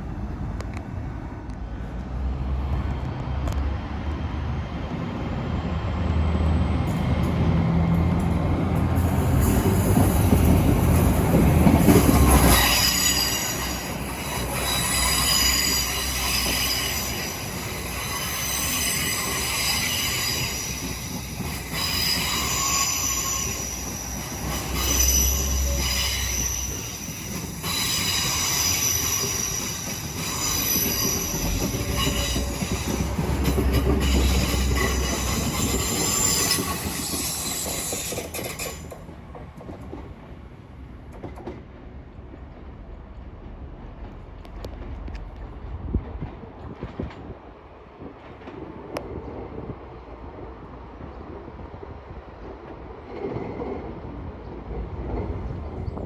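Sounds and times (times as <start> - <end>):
train rumble: 0.0 - 56.0
train wheels squealing: 9.0 - 39.1.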